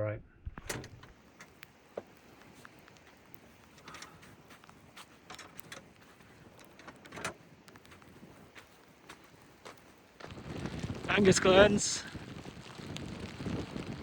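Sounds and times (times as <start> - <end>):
rustling: 0.4 - 14.0
light knocks of handling gear: 0.5 - 10.3.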